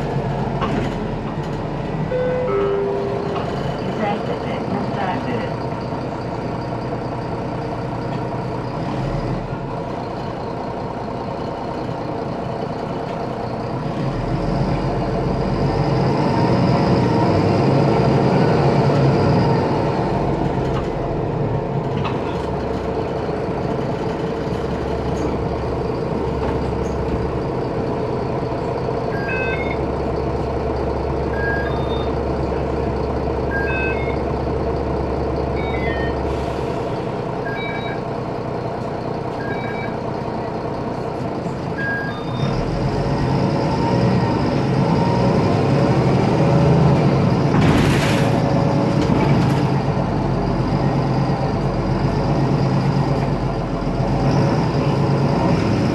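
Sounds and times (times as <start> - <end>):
diesel bus engine running: 0.0 - 55.9
short high beeps: 2.1 - 4.0, 31.4 - 32.1, 33.5 - 34.2.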